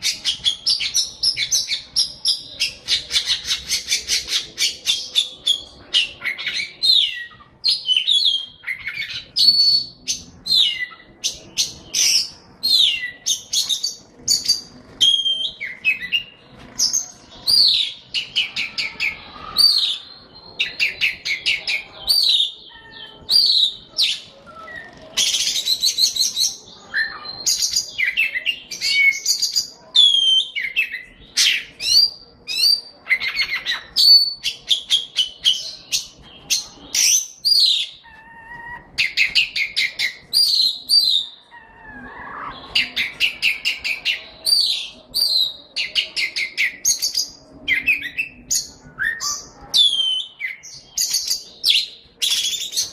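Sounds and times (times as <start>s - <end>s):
songbird singing: 0.0s - 52.9s.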